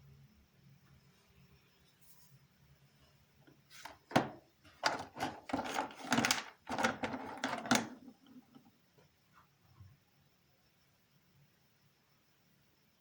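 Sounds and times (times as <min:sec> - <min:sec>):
small objects clicking and rustling: 0:03.8 - 0:08.6.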